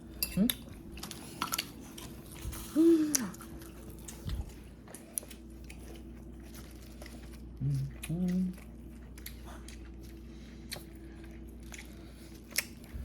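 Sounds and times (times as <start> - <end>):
person chewing: 0.0 - 13.0
person humming: 2.7 - 3.3, 7.6 - 8.6.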